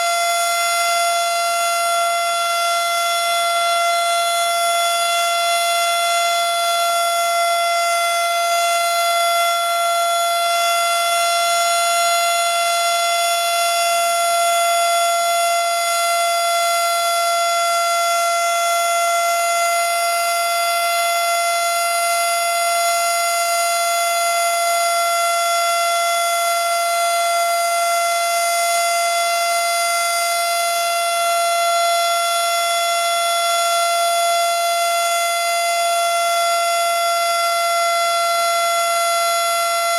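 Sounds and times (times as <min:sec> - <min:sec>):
tornado siren steady tone: 0:00.0 - 0:39.9.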